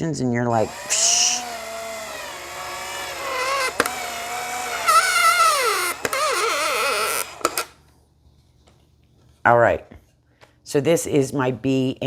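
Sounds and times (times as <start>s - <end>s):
power drill whining: 0.6s - 7.8s.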